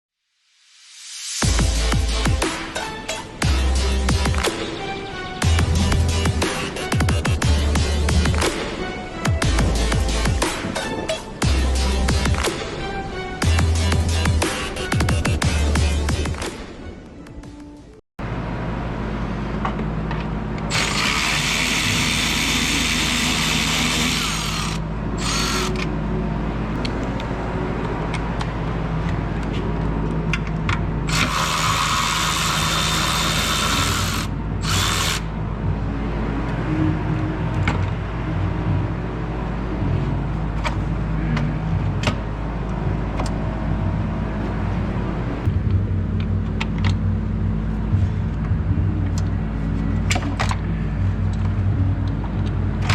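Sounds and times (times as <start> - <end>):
rough high-pitched whirring: 20.7 - 25.9, 31.1 - 35.4.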